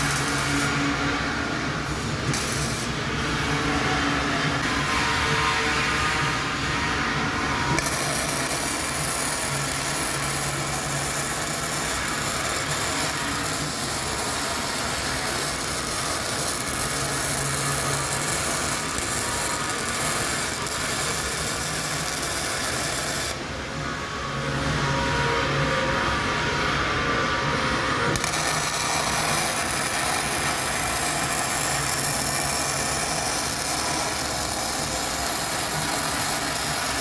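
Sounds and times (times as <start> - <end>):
steady background hum: 0.0 - 37.0
harsh hiss of metalworking: 28.2 - 37.0.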